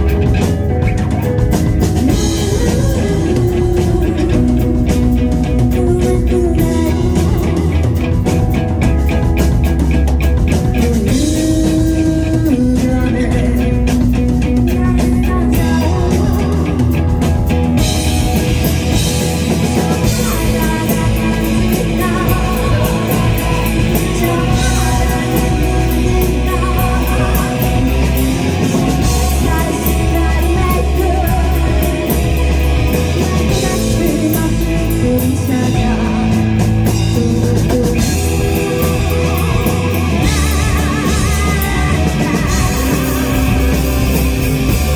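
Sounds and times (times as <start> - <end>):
live rock band playing: 0.0 - 44.9.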